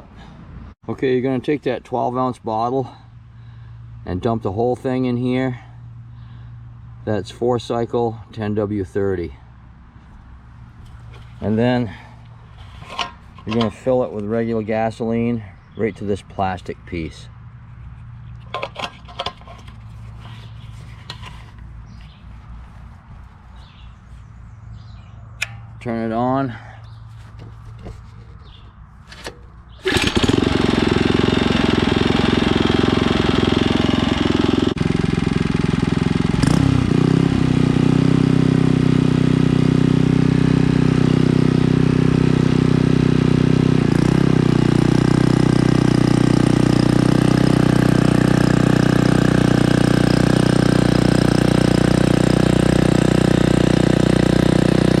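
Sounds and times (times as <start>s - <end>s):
tiller engine running loudly: 29.1s - 55.0s.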